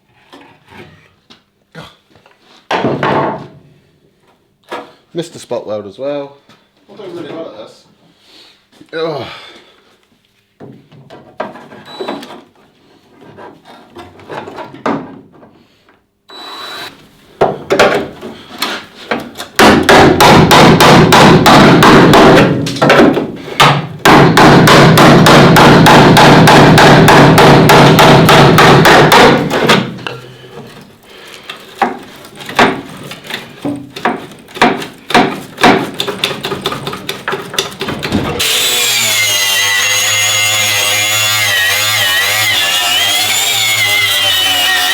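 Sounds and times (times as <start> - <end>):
hammer striking sheet metal: 19.6 - 29.9, 38.4 - 44.9.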